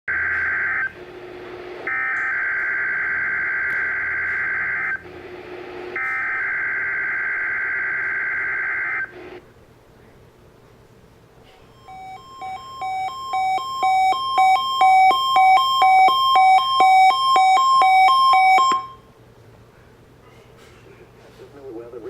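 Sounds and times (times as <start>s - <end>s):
buzzing data tones: 11.8s - 19.0s.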